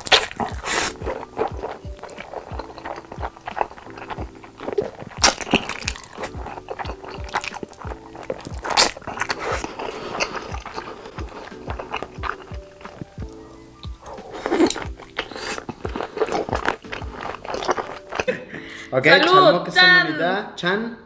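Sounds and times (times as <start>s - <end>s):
crunchy bites and slurps: 0.0s - 18.3s
background music with beat: 0.0s - 18.4s
person eating noodles: 0.0s - 18.4s.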